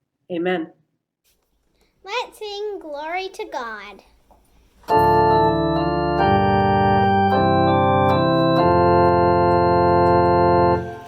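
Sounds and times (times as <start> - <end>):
organ playing held chords: 4.9 - 11.0.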